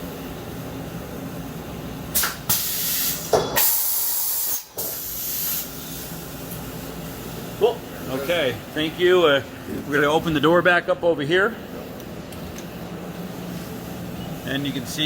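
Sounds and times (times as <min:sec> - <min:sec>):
compressed air hissing: 0:02.1 - 0:08.3.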